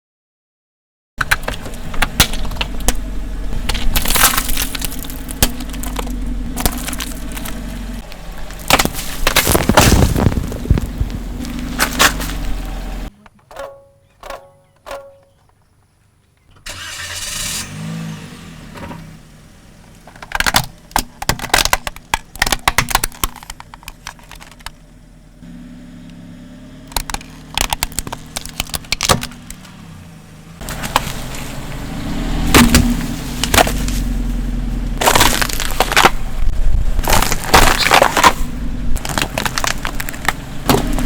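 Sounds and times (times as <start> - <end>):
car engine running: 1.2 - 13.1, 16.5 - 41.0
tyres crushing objects: 1.2 - 15.8, 19.8 - 24.8, 26.9 - 29.8, 30.6 - 31.5, 32.4 - 34.3, 35.0 - 41.0.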